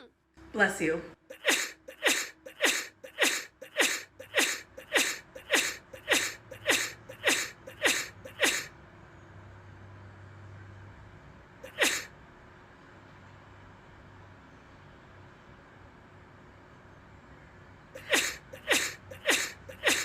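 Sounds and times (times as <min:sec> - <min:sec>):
person sneezing: 0:01.3 - 0:08.7, 0:11.7 - 0:12.1, 0:18.0 - 0:20.0.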